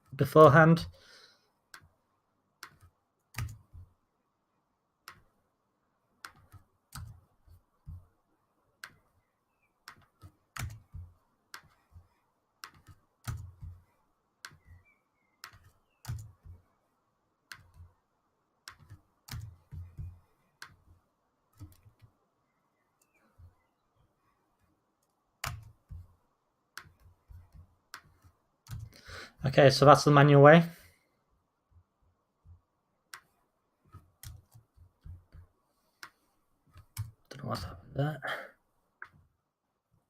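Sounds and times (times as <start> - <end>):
mouse clicks: 2.6 - 3.7, 5.0 - 5.3, 6.2 - 7.2, 14.4 - 16.5, 17.5 - 17.9
keyboard keystrokes: 2.6 - 3.9, 9.9 - 11.8, 15.4 - 16.6, 18.7 - 20.8, 21.6 - 22.1, 25.4 - 26.1.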